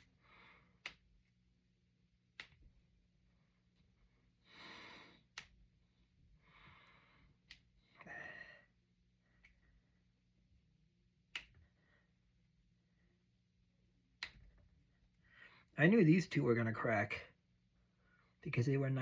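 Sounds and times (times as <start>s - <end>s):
knuckles cracking: 0.7s - 1.1s, 2.3s - 2.7s, 5.2s - 5.6s, 7.4s - 7.8s, 11.3s - 11.6s, 14.2s - 14.6s.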